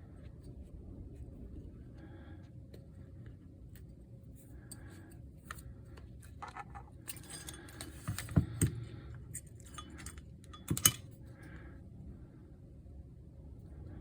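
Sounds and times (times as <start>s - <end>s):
small parts clicking and clinking: 4.6s - 11.2s.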